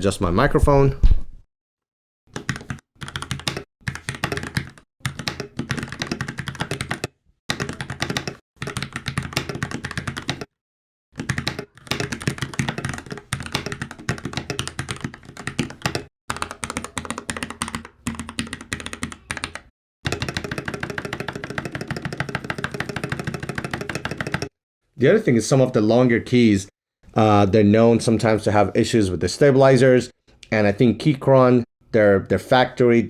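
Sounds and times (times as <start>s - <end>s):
mechanical keyboard typing: 2.4s - 10.5s, 11.2s - 24.5s.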